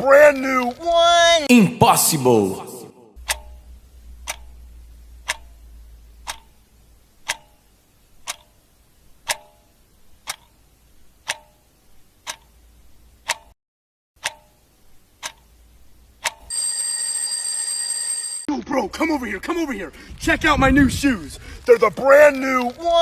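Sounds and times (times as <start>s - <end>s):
faint low hum: 3.2s - 11.2s
clock ticking: 3.2s - 13.6s, 14.2s - 16.5s.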